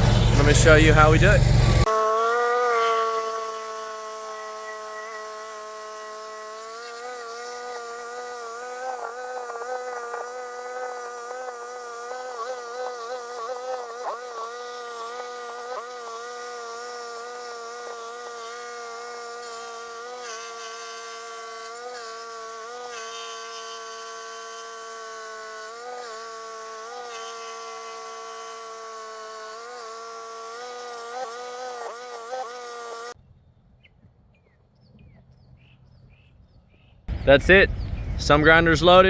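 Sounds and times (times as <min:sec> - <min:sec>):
stump grinder engine running: 0:00.0 - 0:01.9.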